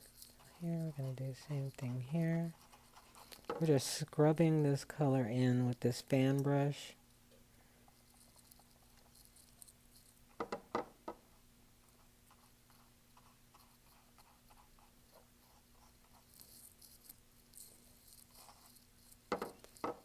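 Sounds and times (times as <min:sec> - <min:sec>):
brush scratching on canvas: 0:00.0 - 0:04.2, 0:08.0 - 0:10.2, 0:11.8 - 0:20.0.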